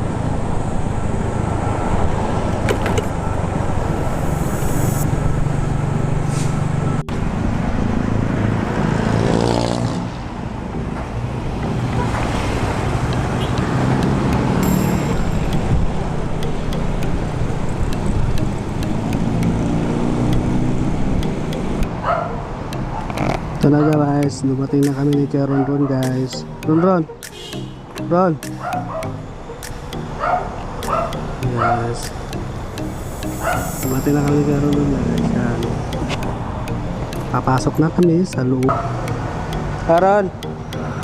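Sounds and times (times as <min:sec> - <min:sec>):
vehicle engine and road rumble: 0:00.0 - 0:29.5.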